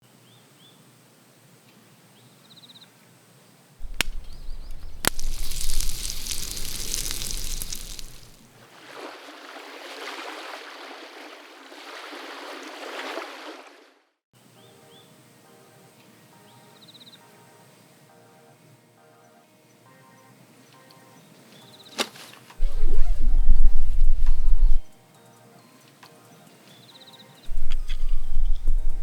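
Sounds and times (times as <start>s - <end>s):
lake water sloshing and lapping: 7.0s - 13.9s
faint bird chirps: 22.6s - 24.9s, 26.8s - 29.0s.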